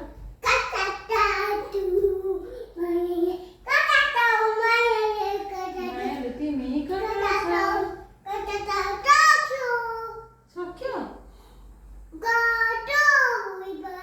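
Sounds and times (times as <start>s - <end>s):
small girl singing: 0.4s - 6.1s, 7.0s - 10.2s, 12.2s - 14.0s.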